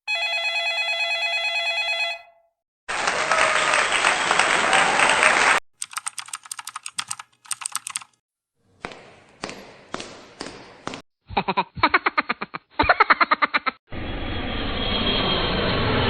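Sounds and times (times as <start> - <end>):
telephone bell ringing: 0.1 - 2.5
applause: 2.9 - 5.6
keyboard typing clicks: 5.8 - 8.2.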